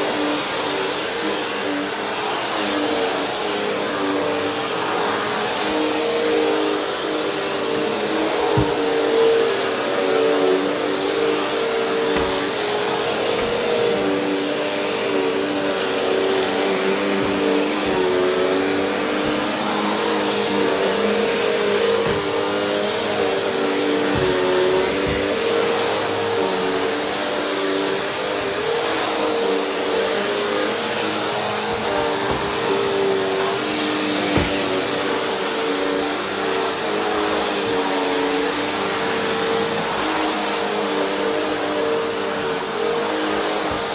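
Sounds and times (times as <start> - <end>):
vacuum cleaner running: 0.0 - 43.9
vacuum cleaner knocking on floor: 8.3 - 9.2, 11.9 - 14.2, 17.1 - 23.2, 23.9 - 25.6, 31.8 - 35.0.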